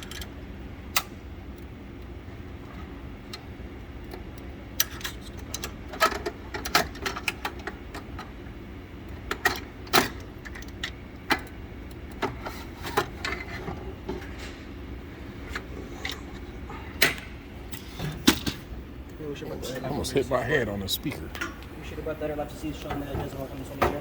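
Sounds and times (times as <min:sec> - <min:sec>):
steady low hum: 0:00.0 - 0:24.0
clicks and knocks of tools: 0:04.1 - 0:08.3.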